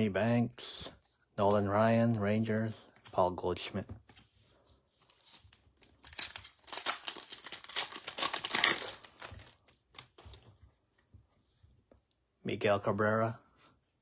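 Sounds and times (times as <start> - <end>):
foil wrapper tearing and crinkling: 5.2 - 10.3.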